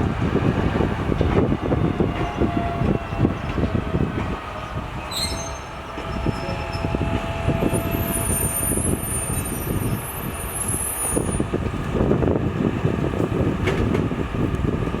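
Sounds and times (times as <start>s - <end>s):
train wheels rumbling on rail: 0.0s - 15.0s
high-pitched wheel squeal: 4.7s - 11.4s.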